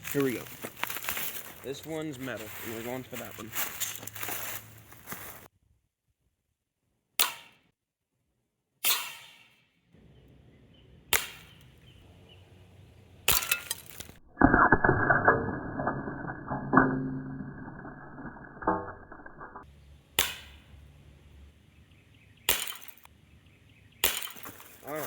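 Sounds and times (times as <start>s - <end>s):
bbs cracking glass: 13.3s - 19.6s, 22.5s - 23.1s, 24.0s - 24.8s
glass crashing: 13.3s - 19.6s, 22.5s - 23.1s, 24.0s - 24.8s.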